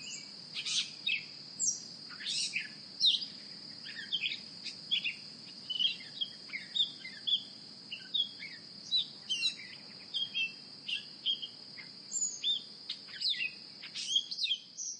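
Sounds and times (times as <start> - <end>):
birds chirping: 0.0 - 14.6.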